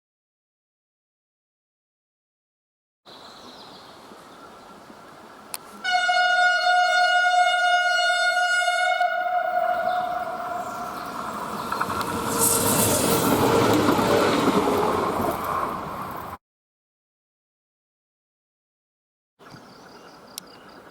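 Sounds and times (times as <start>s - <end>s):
train horn blast: 5.8s - 13.6s
train running past: 5.8s - 16.4s.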